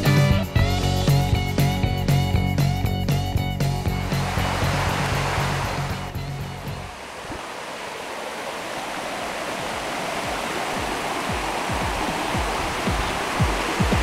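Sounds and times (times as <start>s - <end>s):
rushing noise: 4.0s - 14.0s
low drum thuds: 10.2s - 14.0s.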